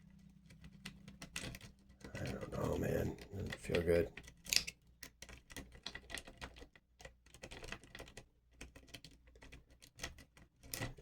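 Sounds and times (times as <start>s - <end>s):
lock pick clicking in lock: 4.2s - 6.6s.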